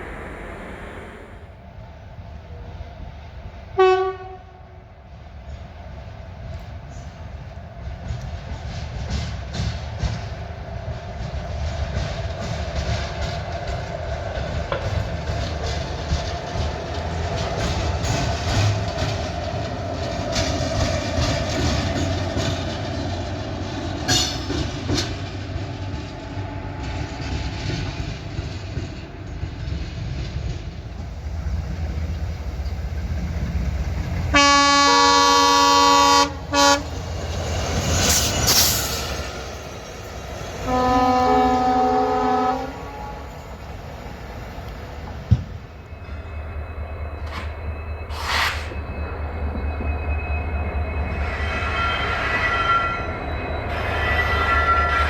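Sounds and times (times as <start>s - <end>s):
locomotive multi-note horn: 3.8s - 4.8s, 34.3s - 37.0s, 40.6s - 43.6s, 53.8s - 55.0s
locomotive rumble and wheel clatter: 4.4s - 55.0s.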